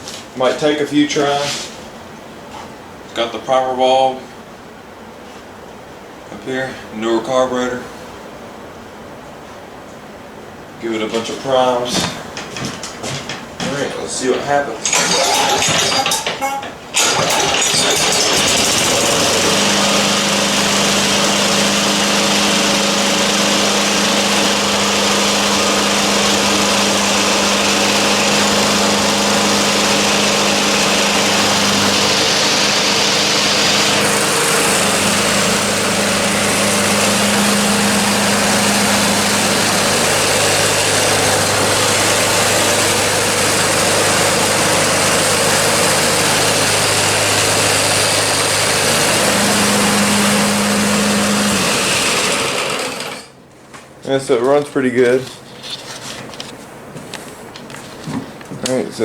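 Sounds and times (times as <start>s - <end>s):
lawn mower engine running: 14.9s - 53.4s.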